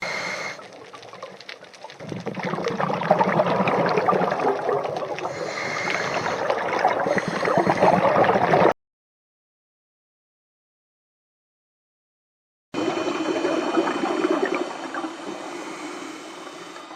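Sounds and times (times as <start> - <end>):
underwater bubbles from diver exhaling: 0.0 - 8.7, 12.8 - 16.9.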